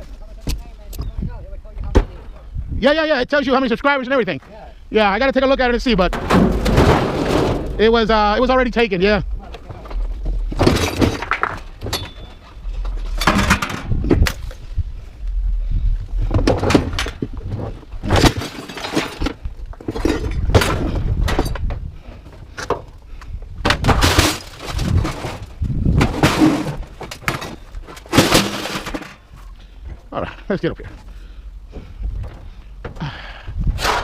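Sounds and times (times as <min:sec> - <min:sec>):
scrap metal clanging onto pile: 0:26.2 - 0:29.2.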